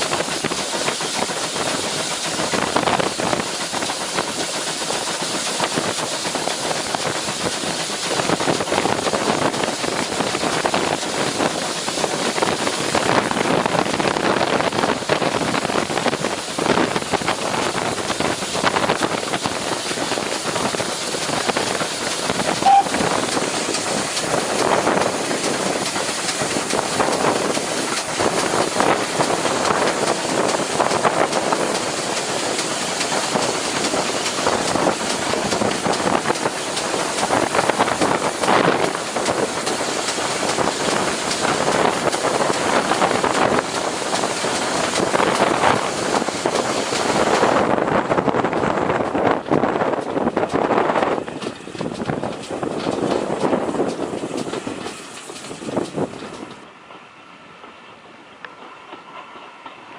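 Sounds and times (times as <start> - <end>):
train rumble and hiss: 0.0 - 59.9
short high-pitched note: 22.6 - 23.0.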